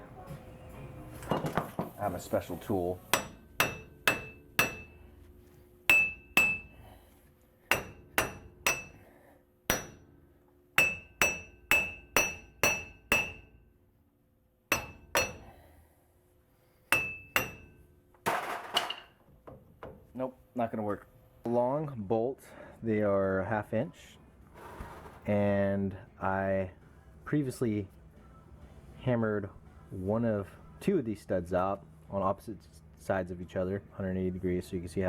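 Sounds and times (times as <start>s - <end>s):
hammer striking metal: 3.1s - 5.1s, 5.9s - 6.9s, 7.7s - 9.1s, 9.7s - 10.2s, 10.8s - 13.6s, 14.7s - 15.6s, 16.9s - 17.9s.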